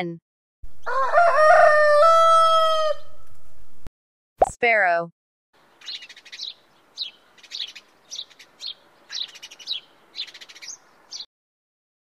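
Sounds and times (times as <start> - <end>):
sparrow chirping: 5.6 - 11.3.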